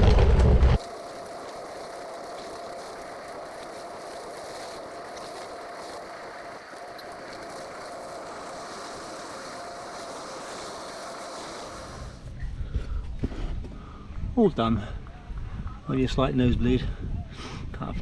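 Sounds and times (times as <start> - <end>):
bicycle tyres rolling: 0.0 - 14.1.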